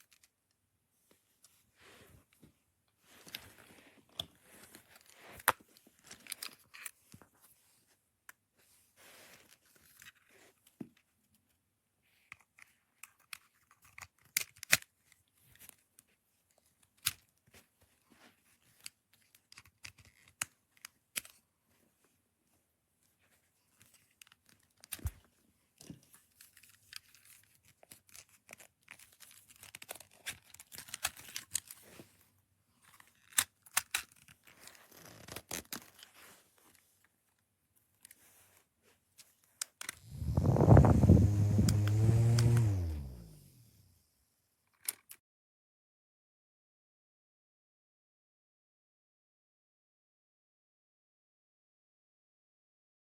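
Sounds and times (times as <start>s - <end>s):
packaging rustling and tearing: 32.9s - 36.8s.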